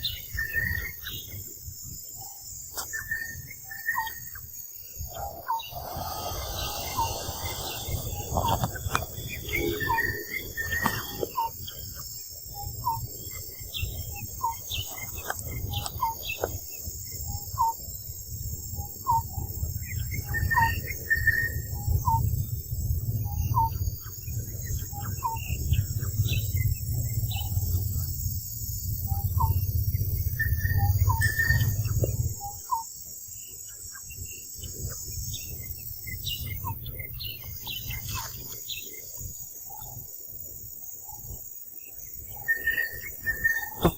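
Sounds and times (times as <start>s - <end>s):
wind rumble on microphone: 0.0s - 32.8s, 33.5s - 43.9s
insects droning: 0.0s - 43.9s
short chirping calls: 2.7s - 16.6s.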